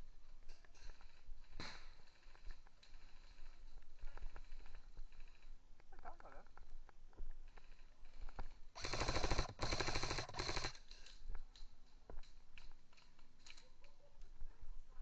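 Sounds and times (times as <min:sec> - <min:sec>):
airsoft gun full-auto bursts: 0:08.8 - 0:10.8.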